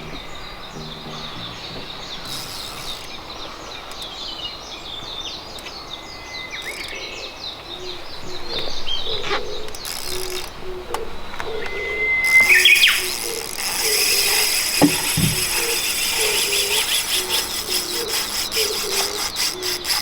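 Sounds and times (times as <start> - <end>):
low hooting call: 0.0 - 3.0.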